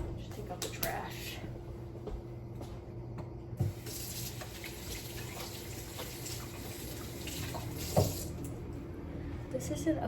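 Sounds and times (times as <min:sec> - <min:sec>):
water running from tap into sink: 0:03.6 - 0:08.6.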